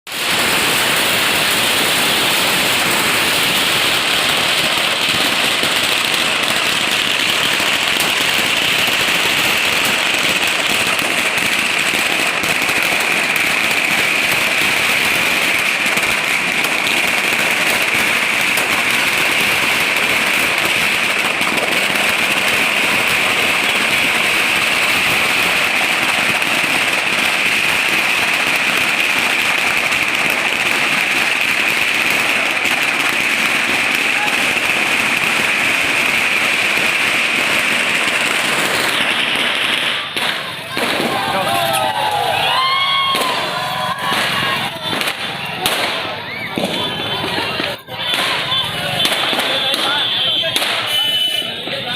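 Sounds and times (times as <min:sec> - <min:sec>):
firecrackers crackling: 0:00.0 - 0:51.9.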